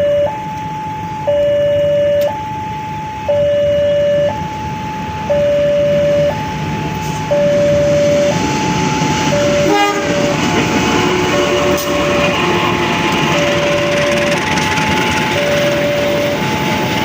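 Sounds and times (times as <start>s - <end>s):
level crossing alarm: 0.0s - 17.0s
train rumble: 0.0s - 17.0s
train horn blast: 9.3s - 14.3s.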